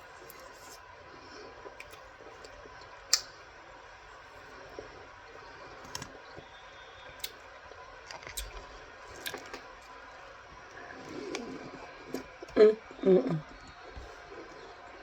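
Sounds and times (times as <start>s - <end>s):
crunchy chewing clicks: 4.7s - 15.0s.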